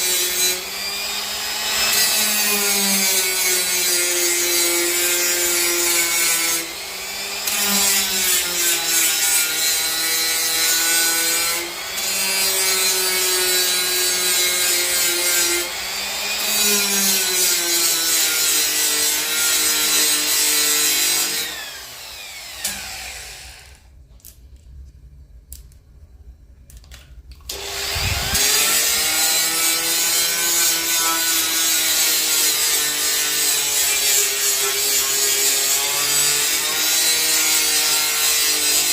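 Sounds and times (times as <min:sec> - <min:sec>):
die grinder whining into wood: 0:00.0 - 0:23.8, 0:27.5 - 0:38.9.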